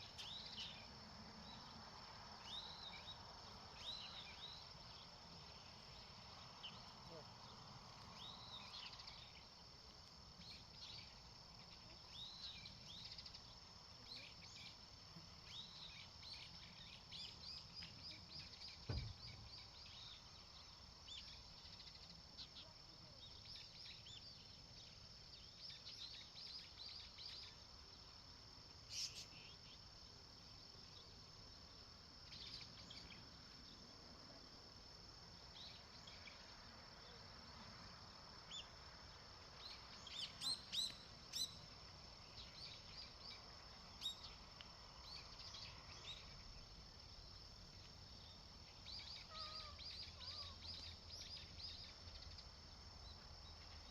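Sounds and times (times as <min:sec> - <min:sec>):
low thump: 0:18.8 - 0:19.4.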